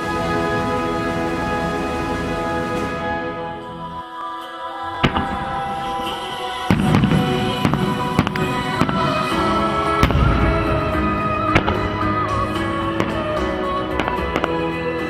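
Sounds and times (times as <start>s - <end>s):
music: 0.0s - 15.0s
fireworks bangs and crackles: 5.0s - 15.0s.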